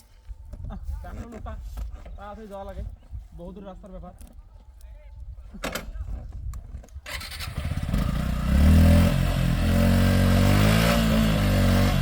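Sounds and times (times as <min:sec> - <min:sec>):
motorcycle engine running: 0:07.1 - 0:12.0.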